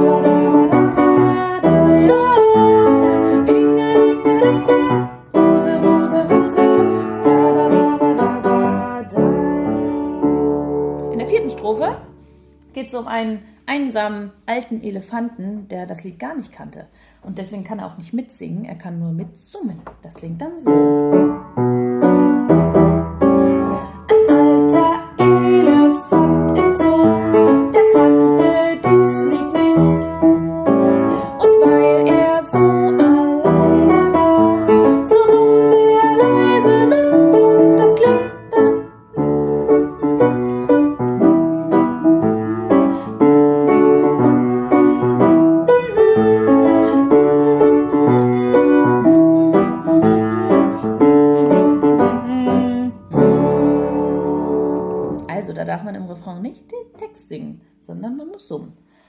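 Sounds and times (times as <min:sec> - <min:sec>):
piano melody: 0:00.0 - 0:12.8, 0:20.6 - 0:55.7
woman humming: 0:38.6 - 0:55.1.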